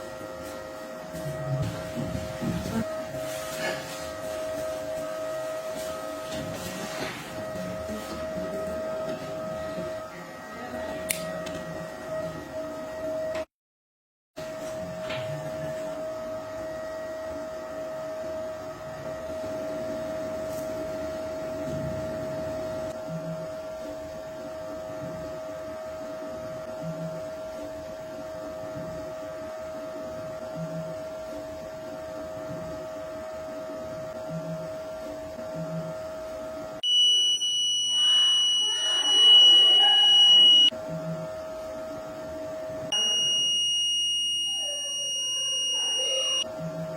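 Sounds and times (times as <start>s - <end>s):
high-pitched alarm buzzer: 36.8s - 40.7s, 42.9s - 46.5s.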